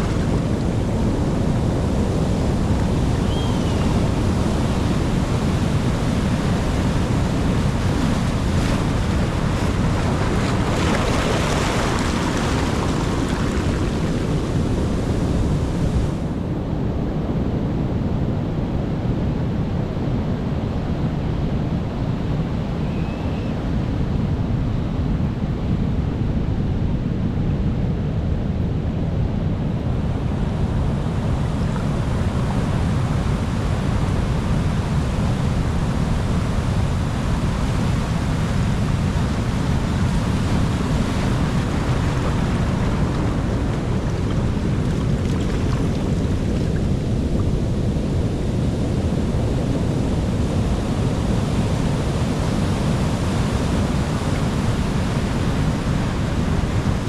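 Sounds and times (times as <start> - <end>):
waves breaking on shore: 0.0 - 16.5, 30.1 - 57.0.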